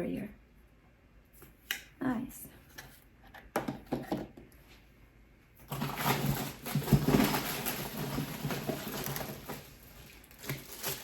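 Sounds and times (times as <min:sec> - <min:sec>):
plastic packaging crinkling: 0:05.7 - 0:11.0.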